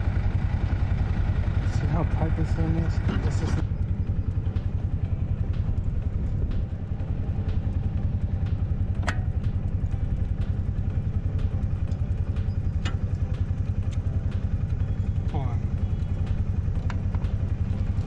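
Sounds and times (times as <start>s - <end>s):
tractor engine running: 0.0s - 18.0s
sharp metallic clicks: 7.5s - 18.0s.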